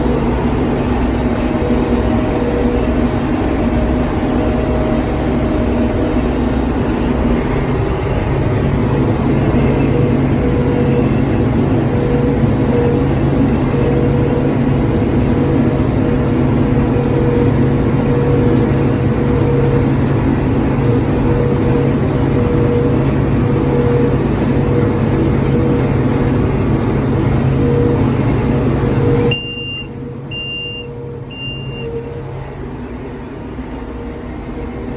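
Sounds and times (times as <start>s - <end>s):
tractor diesel engine running: 0.0s - 34.9s
high beep: 29.3s - 31.9s.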